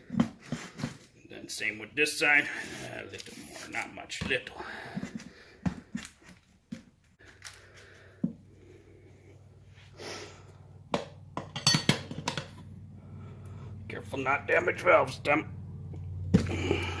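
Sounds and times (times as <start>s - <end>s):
metal tire spoons clinking on rim: 11.4s - 12.7s.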